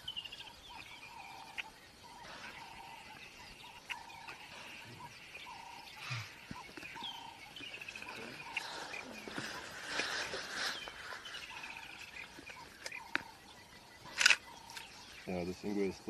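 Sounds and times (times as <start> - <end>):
birds whistling and trilling: 0.0 - 16.0.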